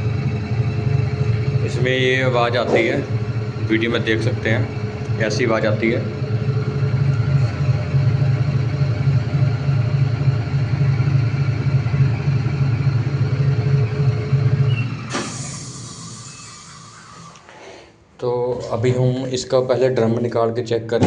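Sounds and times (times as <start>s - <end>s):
washing machine drum spinning: 0.0s - 17.3s.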